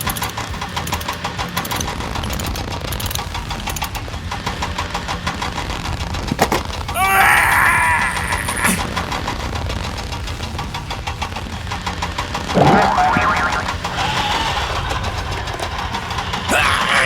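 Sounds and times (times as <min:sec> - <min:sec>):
model truck engine knocking: 0:00.0 - 0:07.0, 0:08.0 - 0:16.5
loud rising pitched sound: 0:12.6 - 0:13.8.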